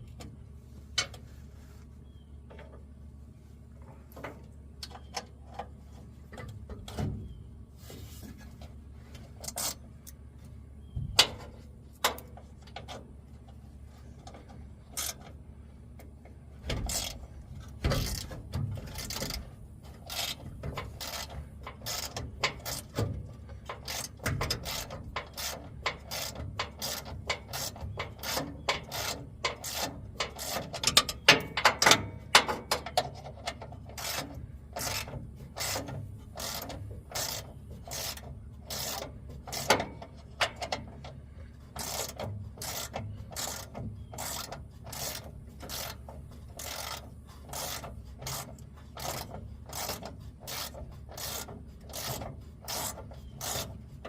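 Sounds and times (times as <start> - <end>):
ratchet wrench clicking: 15.0 - 15.3, 17.9 - 23.0, 23.6 - 40.9, 41.8 - 53.8.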